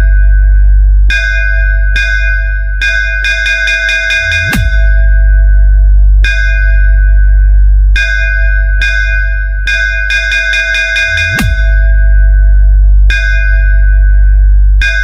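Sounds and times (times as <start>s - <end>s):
deep heavy bass: 0.0s - 15.0s
bell-like synth hits: 1.1s - 5.4s, 8.0s - 12.3s.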